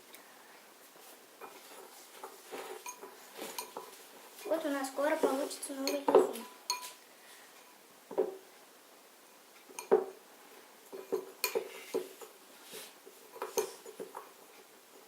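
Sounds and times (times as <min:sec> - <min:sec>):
tableware clinking and knocking: 0:01.4 - 0:04.0, 0:05.2 - 0:07.0, 0:08.1 - 0:08.4, 0:09.7 - 0:10.2, 0:10.9 - 0:12.4, 0:13.3 - 0:14.4.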